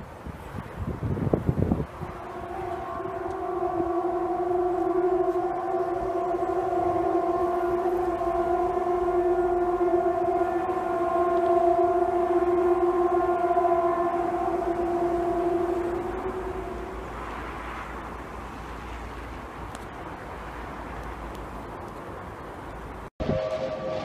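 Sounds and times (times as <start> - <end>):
low steady siren-like tone: 1.7 - 20.8, 23.2 - 24.0.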